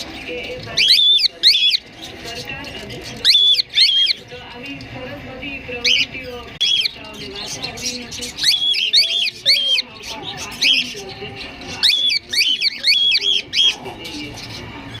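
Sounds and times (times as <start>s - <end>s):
cockatiels chirping: 0.0s - 15.0s.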